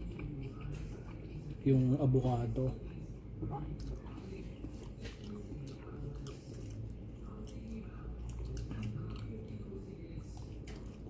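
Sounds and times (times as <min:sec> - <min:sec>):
low background hum: 0:00.0 - 0:11.0
person chewing food: 0:03.8 - 0:11.0.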